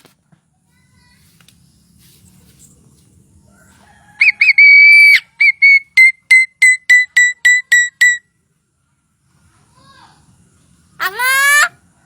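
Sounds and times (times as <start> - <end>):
bird whistling: 4.2 - 8.2.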